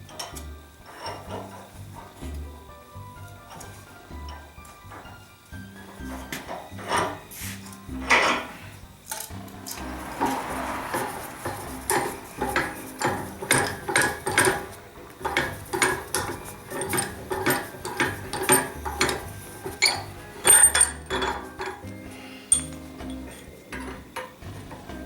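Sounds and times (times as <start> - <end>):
tango music: 0.0 - 25.0.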